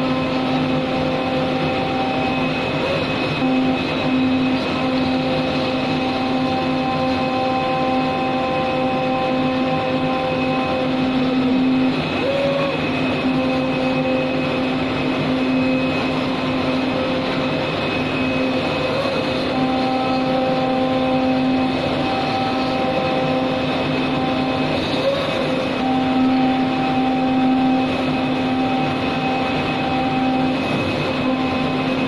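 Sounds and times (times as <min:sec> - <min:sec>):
cutting machine humming: 0:00.0 - 0:32.0
machine whine: 0:00.0 - 0:32.0.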